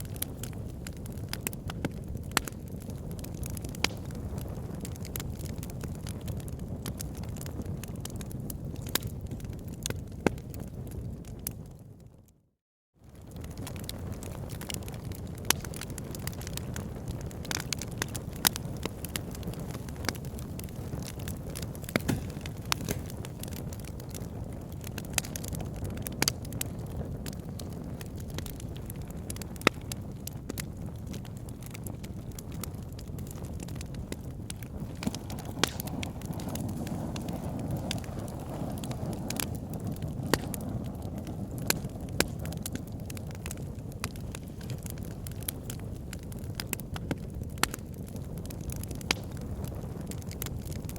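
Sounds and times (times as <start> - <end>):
wood fire crackling: 0.0 - 12.0, 13.0 - 50.9
fire popping and snapping: 0.0 - 12.2, 13.0 - 50.9.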